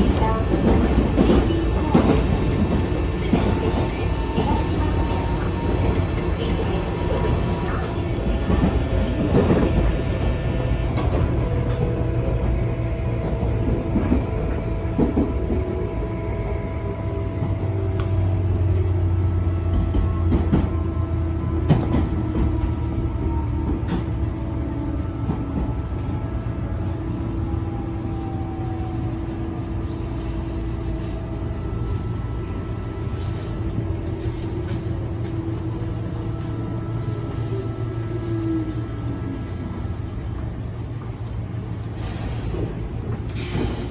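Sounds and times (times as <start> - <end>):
rail joint clicks: 0.0 - 16.8, 30.6 - 43.9
wheels rumbling on rail: 0.0 - 43.9.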